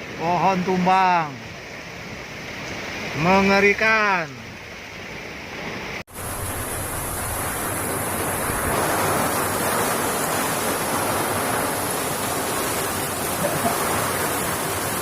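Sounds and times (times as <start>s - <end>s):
heavy rain: 0.0s - 15.0s
strong wind: 4.6s - 15.0s.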